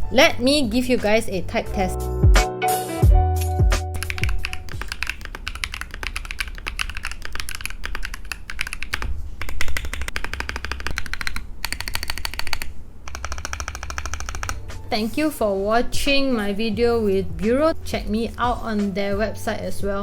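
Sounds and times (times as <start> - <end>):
mechanical keyboard typing: 3.9 - 14.6.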